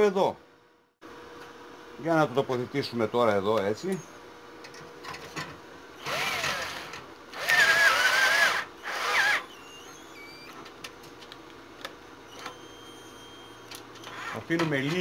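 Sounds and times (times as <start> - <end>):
power drill drilling metal: 6.0 - 10.5.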